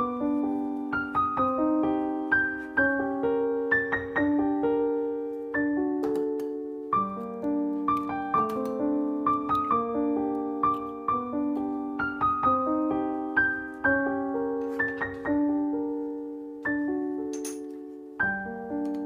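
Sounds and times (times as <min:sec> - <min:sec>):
gentle solo piano melody: 0:00.0 - 0:19.0.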